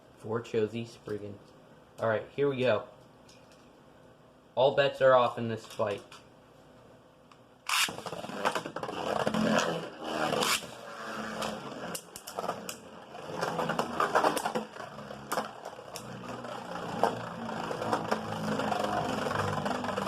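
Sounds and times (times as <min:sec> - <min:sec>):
spinning tops launched with rip: 0:07.6 - 0:20.0
spinning tops grinding on plastic: 0:07.7 - 0:20.0.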